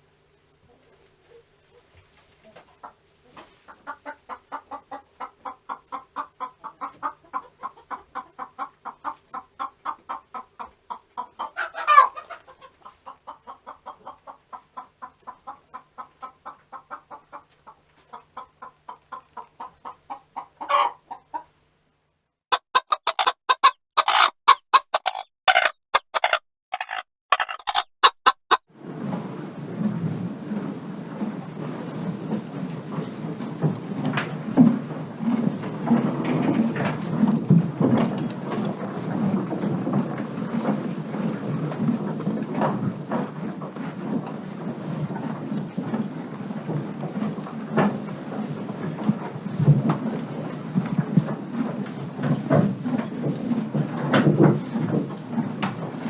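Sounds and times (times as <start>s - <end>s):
hen clucking: 2.5s - 21.5s, 22.5s - 28.7s
hen squawking: 22.5s - 28.6s.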